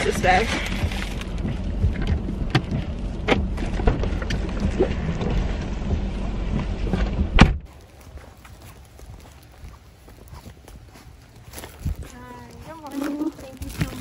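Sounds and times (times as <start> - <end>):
low hum: 0.0 - 14.0
loud thump: 7.0 - 7.7.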